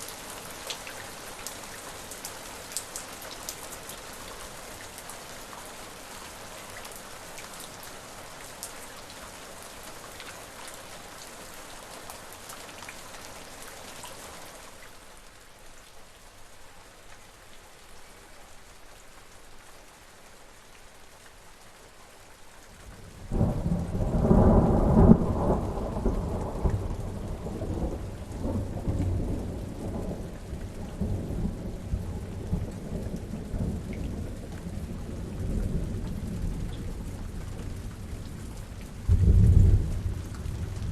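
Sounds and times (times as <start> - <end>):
rain falling: 0.0 - 40.9
thunder clap and rumbles: 23.3 - 29.6, 39.1 - 40.9.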